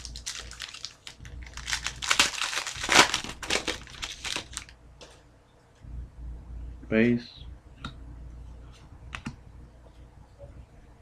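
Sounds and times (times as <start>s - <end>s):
wrapper and cards crinkling: 0.0s - 4.7s.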